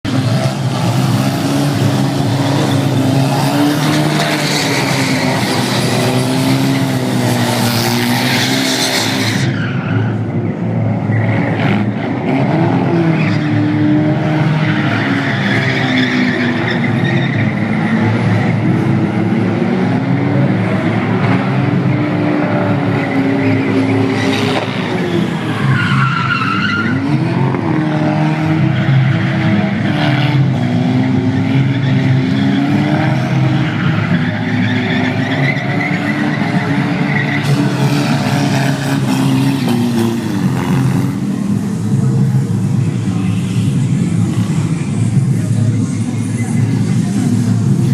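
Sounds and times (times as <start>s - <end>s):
car engine revving: 0.0s - 47.9s.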